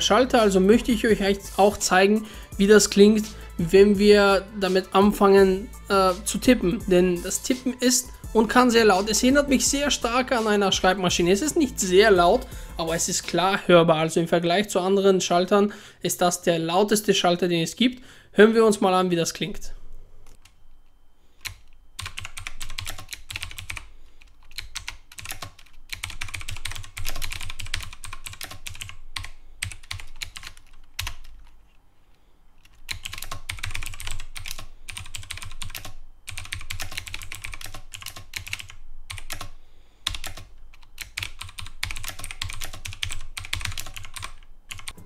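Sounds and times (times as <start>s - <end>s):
typing on mechanical keyboard: 21.4s - 31.6s, 32.6s - 45.0s.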